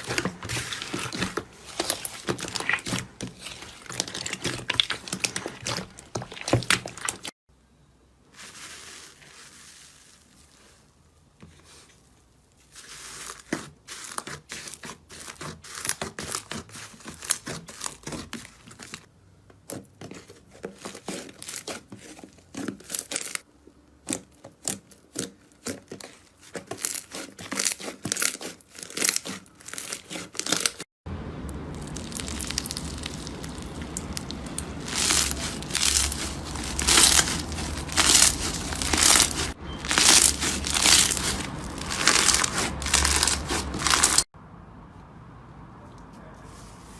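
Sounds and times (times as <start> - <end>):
slime crackling and popping: 0.0 - 7.3, 31.5 - 44.3.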